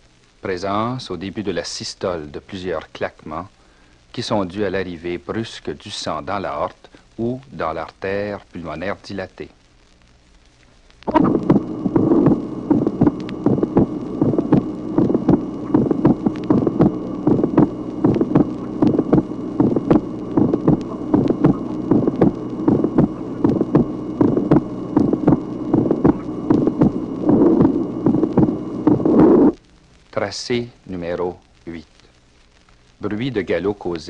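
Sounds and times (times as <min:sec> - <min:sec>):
steady hum: 0:00.0 - 0:34.0
heart clicks: 0:11.1 - 0:29.6
heartbeat through stethoscope: 0:11.1 - 0:29.6.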